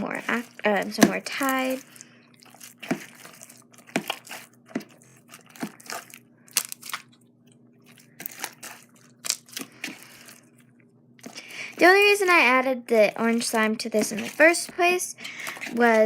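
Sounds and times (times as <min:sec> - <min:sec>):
slime crackling and popping: 0:00.0 - 0:07.2, 0:08.0 - 0:10.5.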